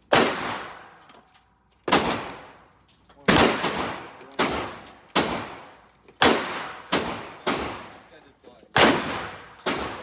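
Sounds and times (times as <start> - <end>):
echoing gunshots: 0.0 - 1.0, 1.9 - 2.6, 3.3 - 8.0, 8.8 - 10.0.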